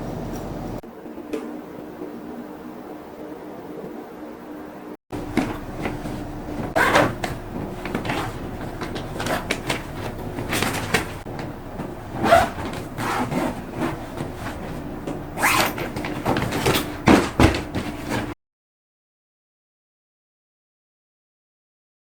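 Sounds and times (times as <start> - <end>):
household hum: 0.0 - 18.4
objects being handled: 5.2 - 18.4.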